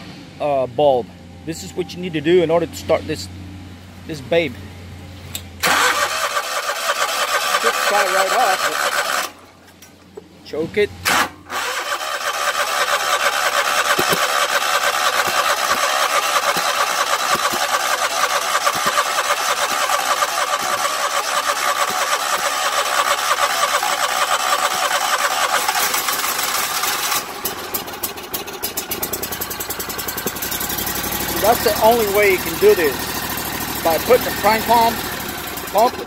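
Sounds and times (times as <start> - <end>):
mower engine running: 5.6 - 9.7, 11.1 - 36.0.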